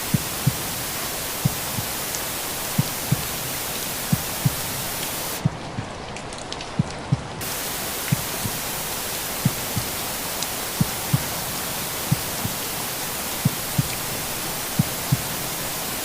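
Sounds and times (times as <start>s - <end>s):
rain-like hiss: 0.0s - 16.0s
raindrop ticks: 0.0s - 16.0s
heartbeat thumps: 0.1s - 0.8s, 1.4s - 2.0s, 2.7s - 3.4s, 4.0s - 5.9s, 6.8s - 7.5s, 8.1s - 8.7s, 9.4s - 10.0s, 10.8s - 11.5s, 12.1s - 12.7s, 13.4s - 14.1s, 14.7s - 15.5s.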